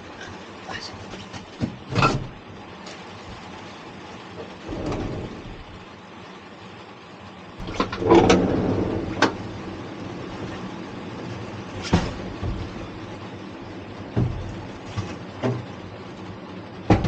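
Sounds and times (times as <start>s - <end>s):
vehicle door clunks and knocks: 14.1s - 15.7s.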